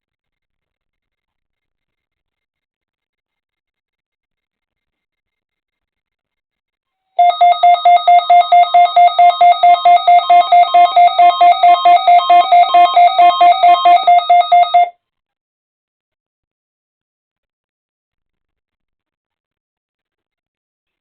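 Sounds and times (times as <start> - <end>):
weather radio alert beeping: 7.2 - 14.9.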